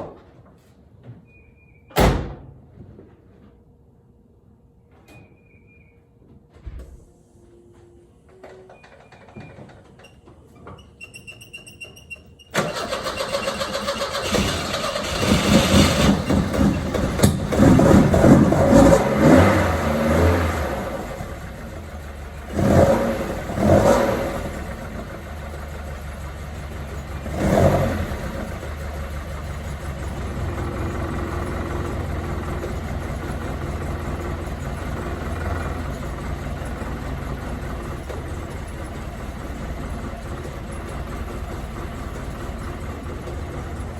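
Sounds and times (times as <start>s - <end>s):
car engine starting: 12.5s - 43.9s
engine idling: 12.5s - 43.9s
engine revving: 12.6s - 25.3s, 27.2s - 28.8s.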